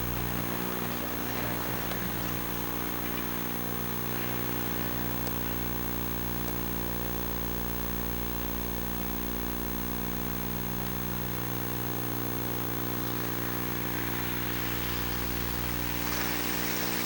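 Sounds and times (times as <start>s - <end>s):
rushing noise: 0.0s - 6.4s, 12.2s - 17.0s
electrical hum: 0.0s - 17.0s
faint hiss: 0.0s - 17.0s.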